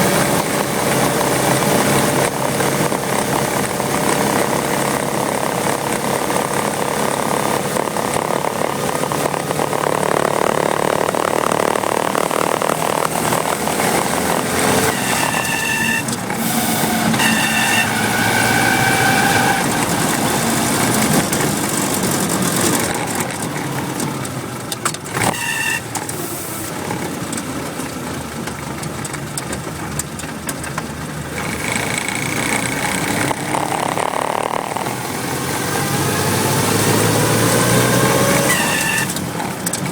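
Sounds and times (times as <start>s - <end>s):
jeep engine running: 0.0s - 39.9s
high squeal from clutch: 14.7s - 21.2s, 25.2s - 26.6s, 38.3s - 39.2s.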